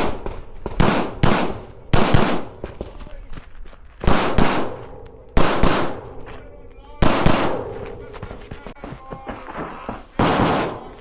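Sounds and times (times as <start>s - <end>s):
pistol shots with echo: 0.0s - 2.9s, 4.0s - 8.1s, 10.2s - 11.0s.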